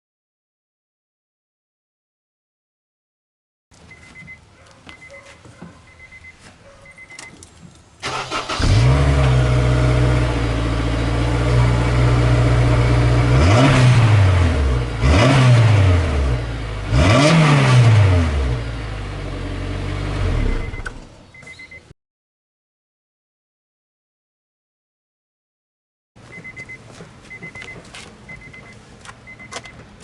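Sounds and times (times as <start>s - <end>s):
car engine idling and revving: 8.0s - 21.2s.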